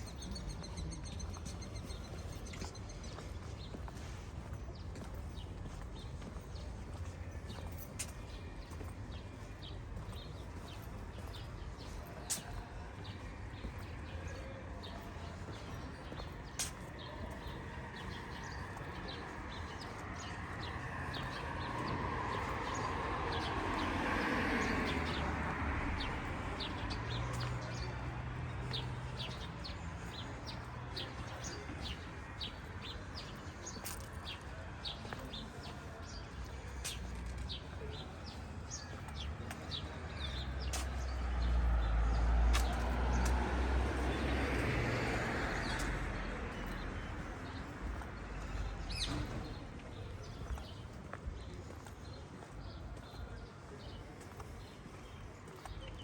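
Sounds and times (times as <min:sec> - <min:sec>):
footsteps on pavement: 0:00.0 - 0:56.0
vehicle passing by: 0:38.5 - 0:49.8.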